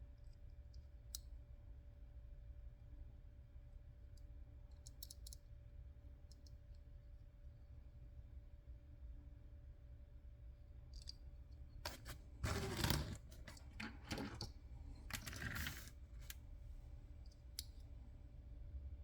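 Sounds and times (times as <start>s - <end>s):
scraping clatter of toys: 11.9s - 14.5s, 15.1s - 16.3s.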